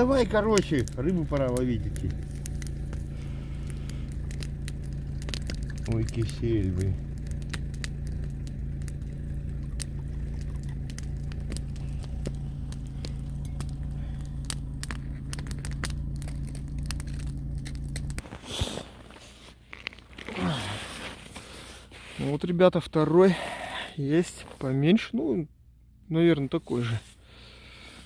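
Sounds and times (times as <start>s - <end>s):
small clicks and crackles: 0.0s - 22.3s
low mechanical hum: 0.0s - 22.7s.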